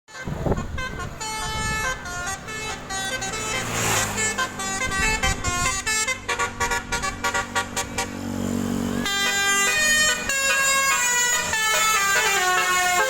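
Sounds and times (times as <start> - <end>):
bus horn playing a tune: 0.1 - 13.0.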